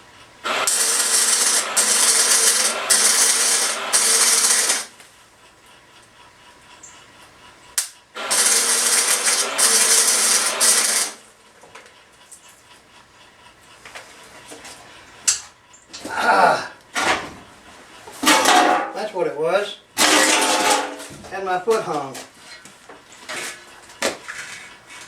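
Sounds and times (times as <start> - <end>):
arc welding crackling: 0.4 - 5.2, 7.8 - 11.4.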